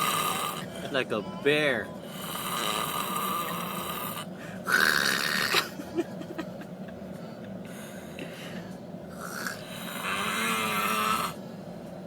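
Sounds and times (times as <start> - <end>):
person snoring: 0.0 - 0.8, 2.0 - 5.7, 9.1 - 11.4.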